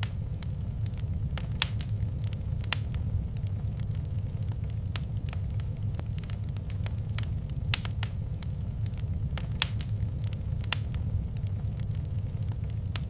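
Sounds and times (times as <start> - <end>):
low rumble: 0.0 - 13.0
wood fire crackling: 0.0 - 13.0.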